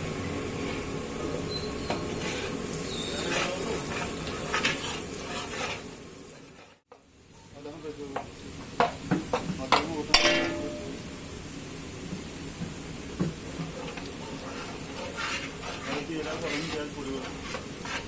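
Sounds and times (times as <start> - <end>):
street noise hum: 0.0 - 18.0
metal pots and utensils clinking: 8.8 - 11.0.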